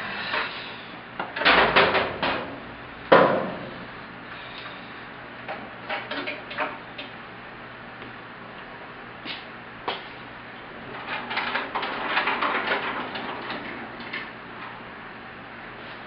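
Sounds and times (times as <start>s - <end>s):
shop equipment clunking and knocking: 1.2s - 3.7s, 10.9s - 14.3s.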